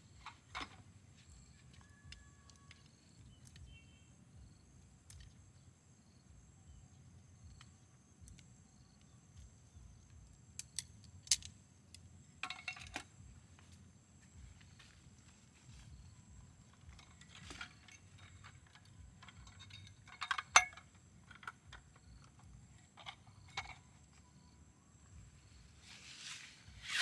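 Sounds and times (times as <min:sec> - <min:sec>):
insects chirring: 0:00.0 - 0:27.0
small clicks and knocks: 0:00.2 - 0:03.8, 0:05.0 - 0:05.5, 0:07.5 - 0:13.8, 0:16.7 - 0:24.3.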